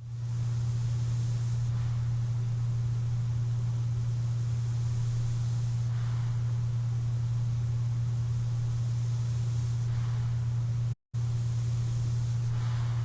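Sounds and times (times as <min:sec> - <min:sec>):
cpap machine humming and hissing: 0:00.0 - 0:13.0
sleeper breathing: 0:11.5 - 0:13.0.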